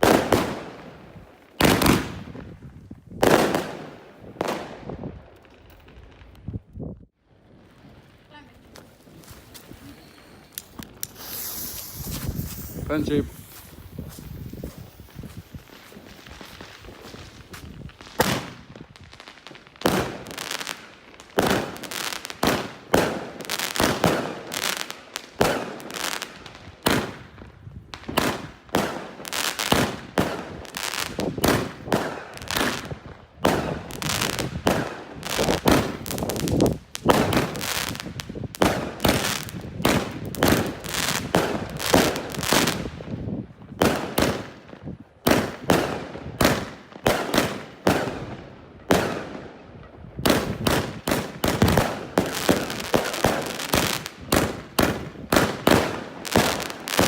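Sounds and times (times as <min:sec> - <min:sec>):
fireworks sharp bangs: 0:00.0 - 0:02.6, 0:03.2 - 0:05.2, 0:08.3 - 0:27.4, 0:28.0 - 0:43.2, 0:43.8 - 0:57.0.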